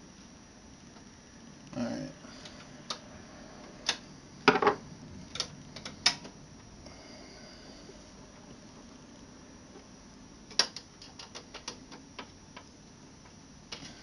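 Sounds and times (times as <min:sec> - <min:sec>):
faint steady hiss: 0:00.0 - 0:14.0
hands clicking computer case hardware: 0:10.5 - 0:12.6.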